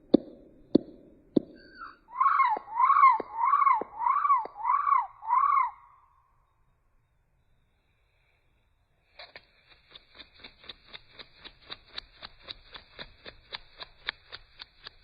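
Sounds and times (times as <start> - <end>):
bird calling with sharp clicks: 1.4 - 5.9.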